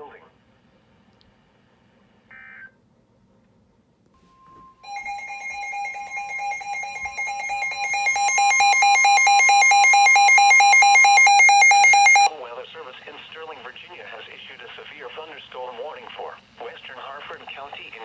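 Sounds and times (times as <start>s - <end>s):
warbling electronic alarm: 4.5s - 12.3s
weather radio warning tone: 4.9s - 12.3s.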